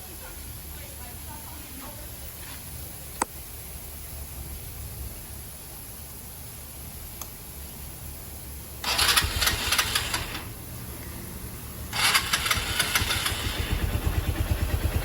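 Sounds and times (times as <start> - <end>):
engine starter cranking: 8.8 - 10.8, 11.9 - 15.0
motorcycle engine idling: 8.8 - 15.0.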